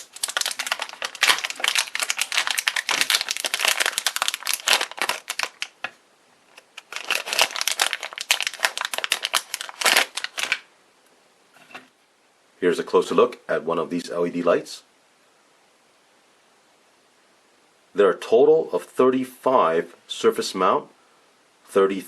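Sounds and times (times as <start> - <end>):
packaging crinkling: 0.0 - 10.7.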